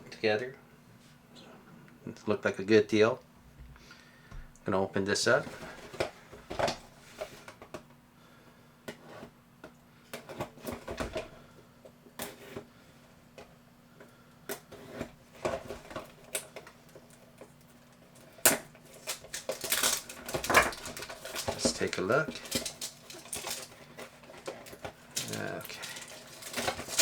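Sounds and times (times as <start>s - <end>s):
plastic packaging crinkling: 15.4s - 27.0s.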